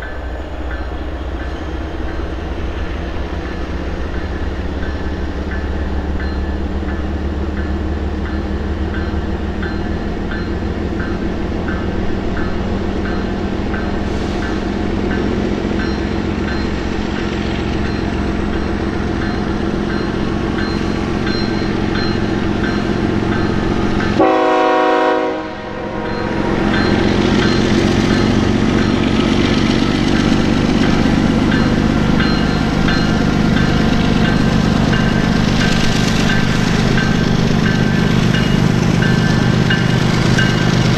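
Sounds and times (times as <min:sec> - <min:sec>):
diesel locomotive humming: 0:00.0 - 0:40.9
train horn blast: 0:24.2 - 0:26.0.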